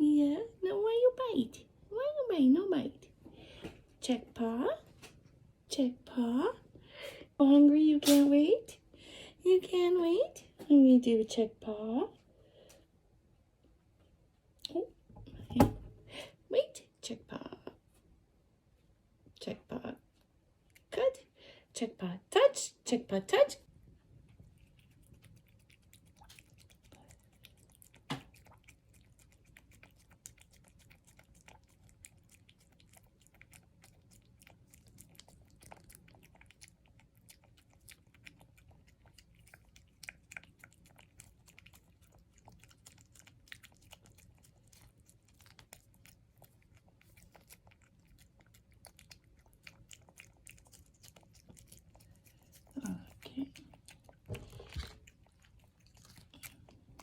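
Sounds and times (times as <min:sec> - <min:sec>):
cat chewing: 0:20.6 - 0:20.9, 0:23.7 - 0:57.0.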